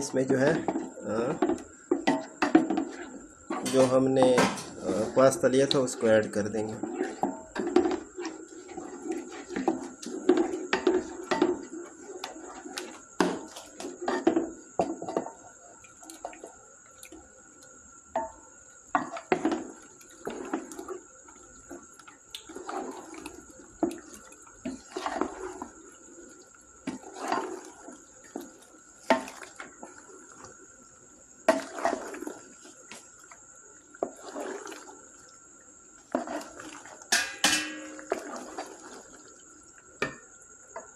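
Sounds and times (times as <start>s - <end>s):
spoon stirring thick sauce: 0.0s - 17.8s, 19.0s - 30.6s, 31.5s - 33.0s, 36.0s - 39.4s
spoon scraping and knocking pot: 0.2s - 15.4s, 36.1s - 38.8s.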